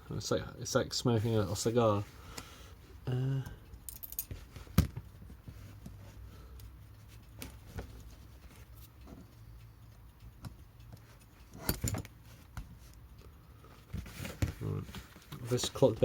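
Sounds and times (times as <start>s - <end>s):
small metal parts clicking: 3.8s - 4.4s.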